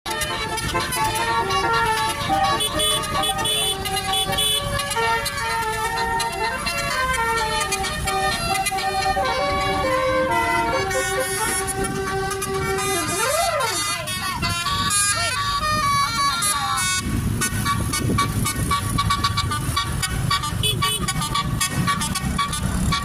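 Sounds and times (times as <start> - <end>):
bus musical horn melody: 0.1 - 23.0.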